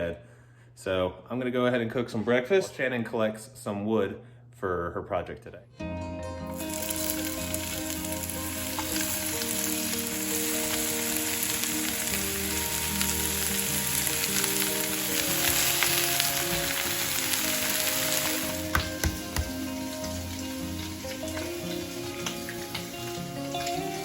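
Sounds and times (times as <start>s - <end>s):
food sizzling in a pan: 6.5s - 24.0s.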